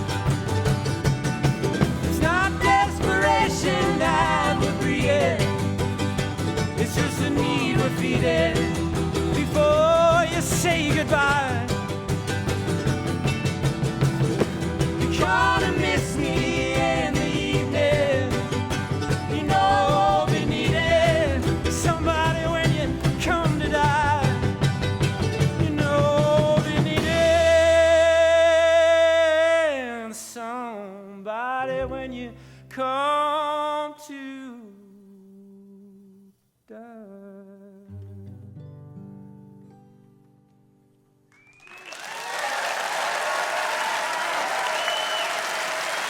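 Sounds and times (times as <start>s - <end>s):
live folk band playing: 0.0s - 29.6s.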